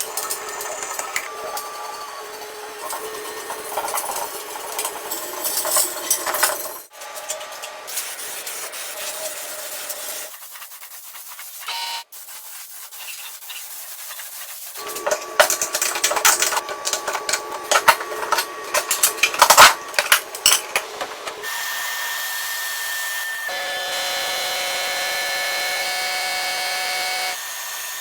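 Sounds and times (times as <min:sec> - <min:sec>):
power tool humming: 0:14.8 - 0:28.0.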